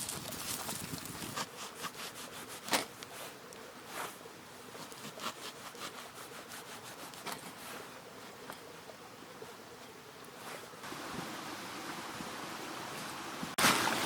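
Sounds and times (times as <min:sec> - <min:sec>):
crunching footsteps on ground: 0:00.0 - 0:01.6
faint steady hiss: 0:00.0 - 0:14.0.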